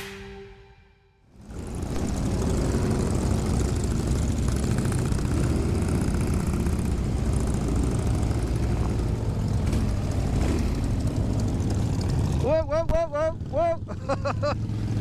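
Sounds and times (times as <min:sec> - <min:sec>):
motorcycle engine running: 0:01.4 - 0:12.4.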